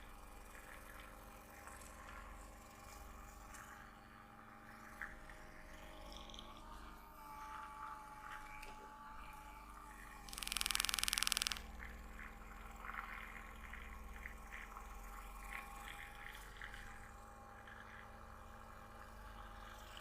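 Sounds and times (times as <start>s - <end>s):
rapid buzzing rattle: 10.2s - 12.3s
click: 10.3s - 11.6s.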